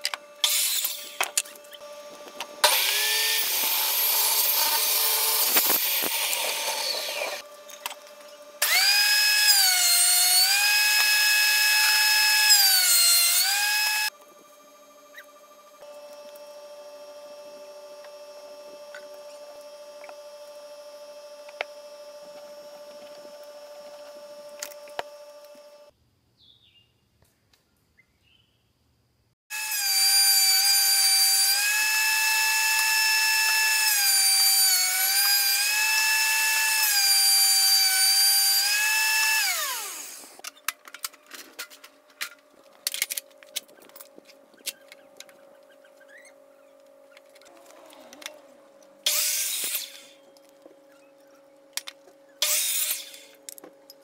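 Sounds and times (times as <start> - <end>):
electric wood planer whine: 0.0 - 25.9, 29.5 - 40.4, 47.2 - 51.0, 52.4 - 53.4
machine hum: 0.0 - 25.9.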